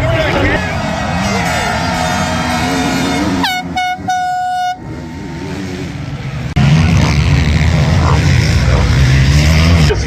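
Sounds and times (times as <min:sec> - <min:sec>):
horn toots: 0:00.7 - 0:05.6.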